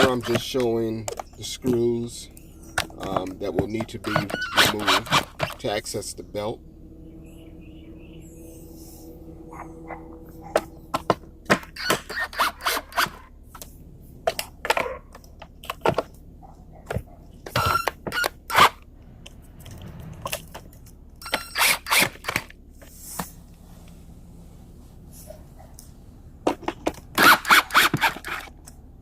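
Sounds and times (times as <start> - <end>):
hand tools scraping and clinking: 0.0 - 6.6, 8.2 - 16.2.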